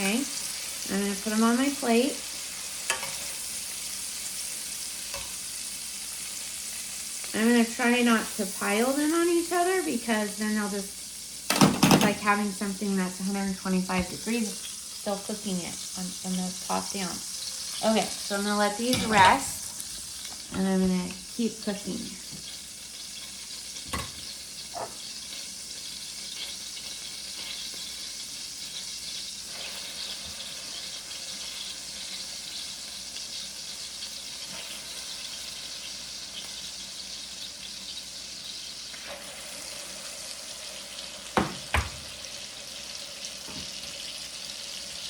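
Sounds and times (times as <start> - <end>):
steak sizzling in frying pan: 0.0 - 45.0
utensils knocking on pan: 18.8 - 19.7, 23.9 - 25.0, 41.4 - 42.1.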